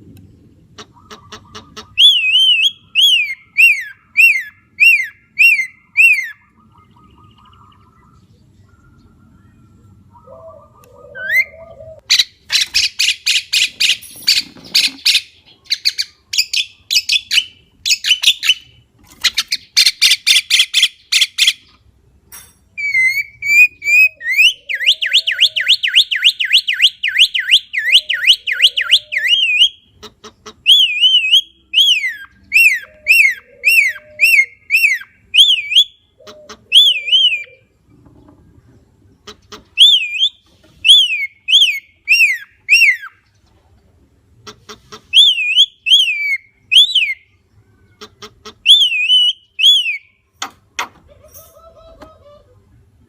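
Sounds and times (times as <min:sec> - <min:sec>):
bird harsh rasping calls: 0:00.7 - 0:09.1
bird whistles: 0:01.8 - 0:18.7, 0:39.8 - 0:43.2, 0:45.1 - 0:47.3, 0:48.7 - 0:50.1.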